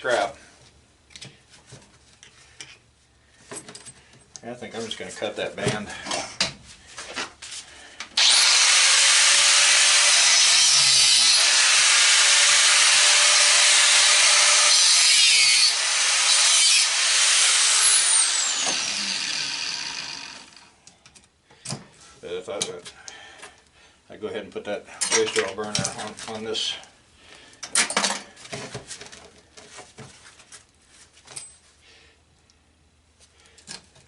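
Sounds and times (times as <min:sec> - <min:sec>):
power tool cutting: 0:08.2 - 0:20.7.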